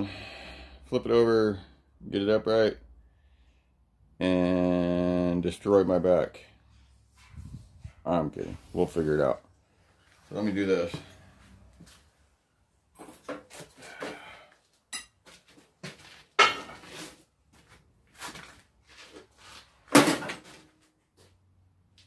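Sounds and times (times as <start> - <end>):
steel anvil stand knocks and clanks: 16.4 - 16.8.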